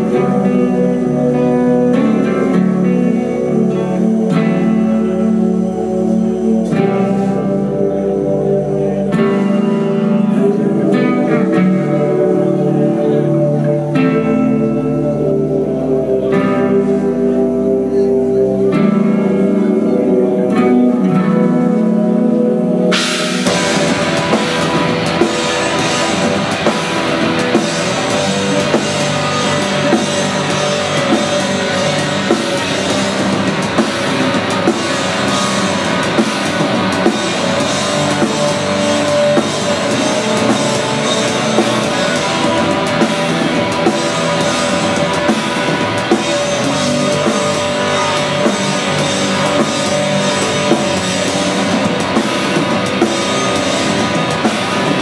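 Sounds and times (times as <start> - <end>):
busy drum kit: 0.0 - 55.0
distorted electric guitars: 0.0 - 55.0.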